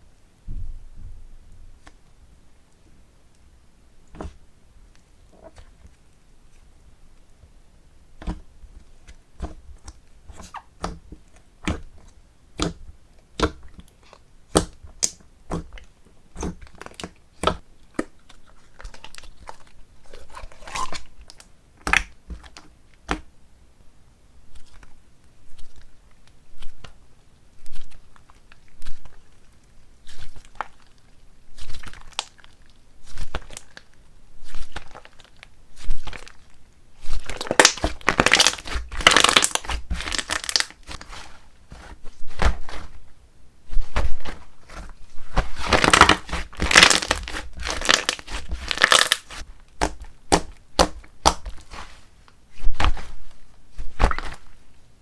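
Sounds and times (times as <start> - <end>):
slime popping and squishing: 12.6 - 23.2, 37.0 - 43.0, 43.7 - 52.0, 53.8 - 54.5.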